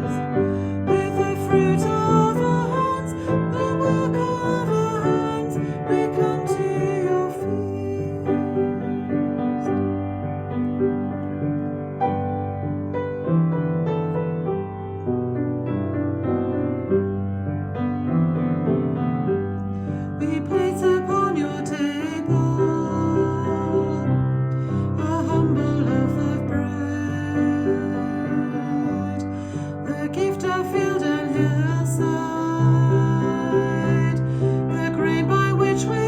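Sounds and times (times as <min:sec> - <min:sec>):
person singing: 0:00.0 - 0:10.1, 0:19.8 - 0:36.0
piano hymn accompaniment: 0:00.0 - 0:36.0.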